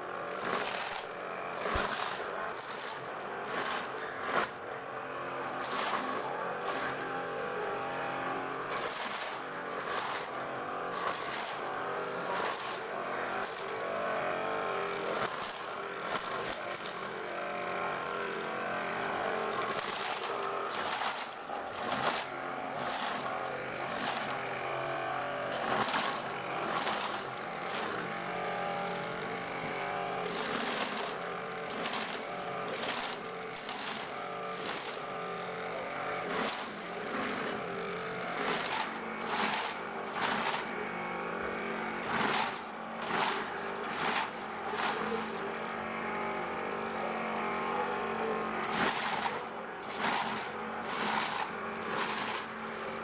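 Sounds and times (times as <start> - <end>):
corn sheller motor humming: 0.0 - 53.0
kernels clattering: 30.3 - 35.1, 42.1 - 45.4.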